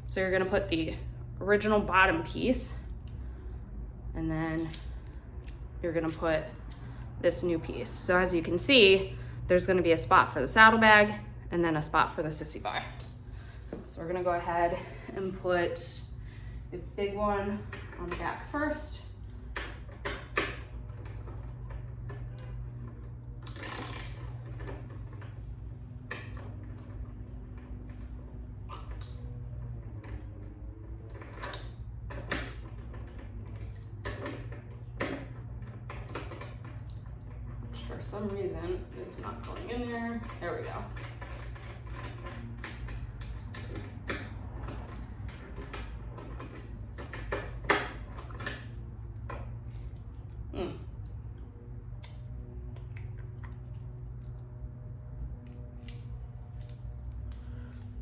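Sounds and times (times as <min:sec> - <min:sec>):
steady low hum: 0:00.0 - 0:58.0
small metal clicks and scrapes: 0:20.9 - 0:25.4.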